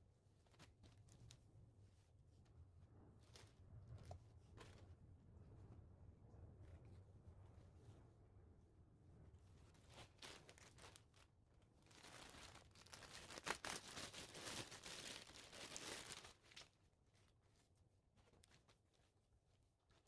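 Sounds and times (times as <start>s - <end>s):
packaging tearing and crinkling: 11.8s - 16.7s.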